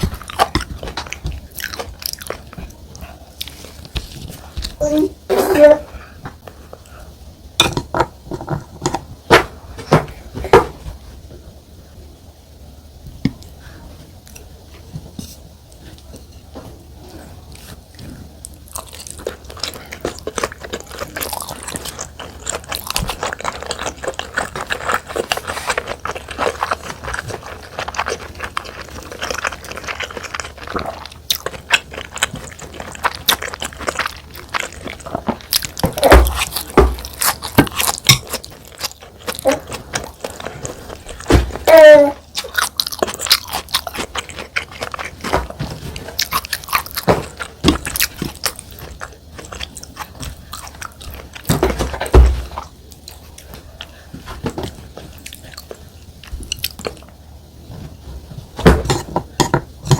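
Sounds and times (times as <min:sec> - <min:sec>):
wet chewing: 0:00.0 - 0:05.0, 0:17.5 - 0:57.2.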